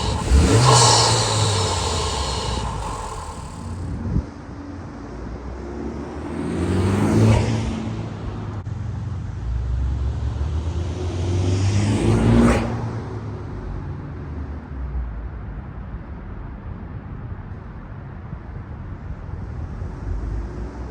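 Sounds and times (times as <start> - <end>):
car engine revving: 0.0 - 3.9.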